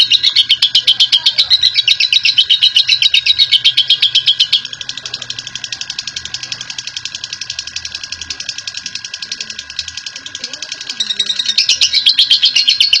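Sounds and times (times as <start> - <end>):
lovebird chattering trill: 0.0 - 13.0.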